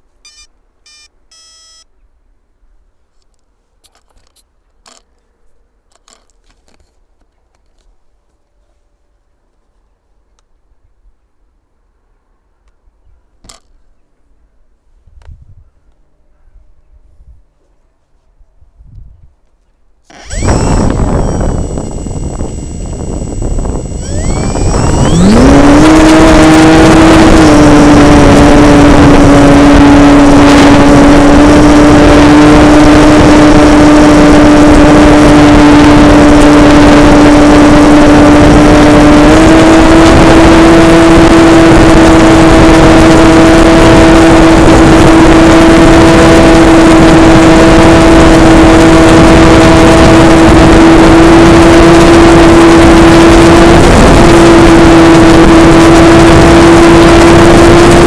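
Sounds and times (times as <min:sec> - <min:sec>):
model airplane motor drone: 0:00.3 - 0:01.8, 0:20.1 - 0:58.0.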